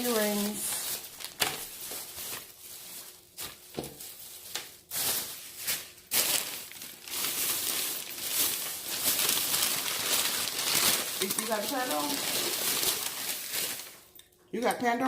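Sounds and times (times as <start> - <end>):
clothing rustling and handling: 0.0 - 14.1.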